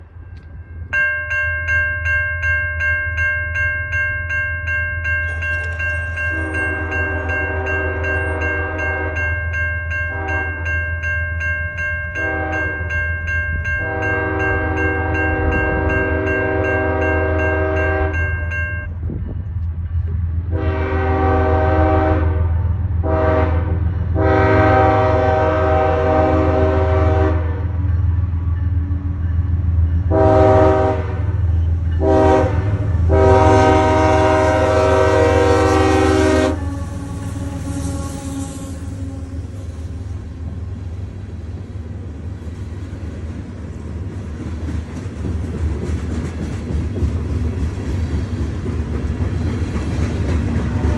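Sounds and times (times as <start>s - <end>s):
crossing warning bell ringing: 0.0s - 22.0s, 23.1s - 41.2s
low rumble of train: 0.0s - 50.9s
locomotive air horn blasts: 6.3s - 9.3s, 10.1s - 10.7s, 12.2s - 12.8s, 13.8s - 18.2s, 20.5s - 27.8s, 30.1s - 31.4s, 32.0s - 40.1s.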